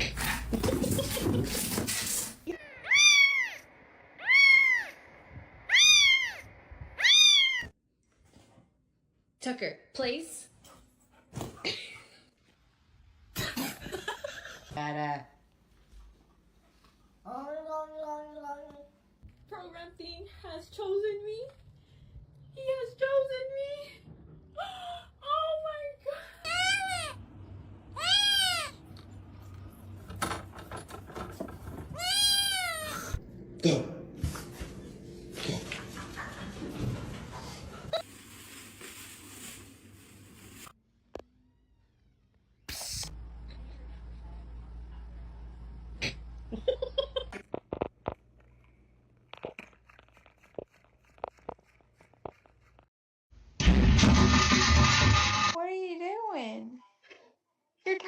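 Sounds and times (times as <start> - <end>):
cat meowing: 2.7 - 5.0, 5.6 - 7.7, 32.0 - 33.1.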